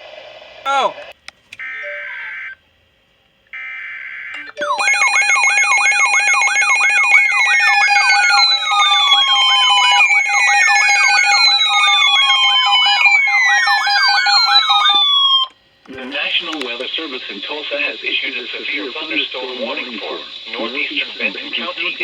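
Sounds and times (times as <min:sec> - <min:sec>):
warbling electronic alert tone: 0:04.4 - 0:15.5.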